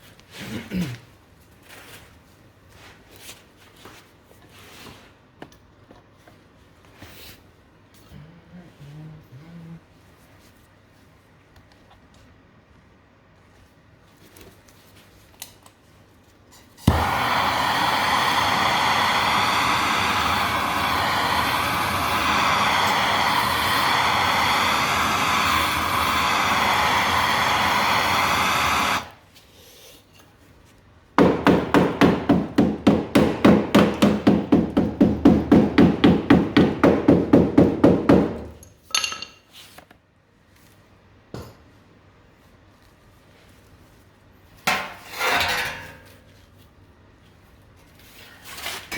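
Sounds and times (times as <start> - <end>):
power tool cutting metal: 16.9 - 29.2.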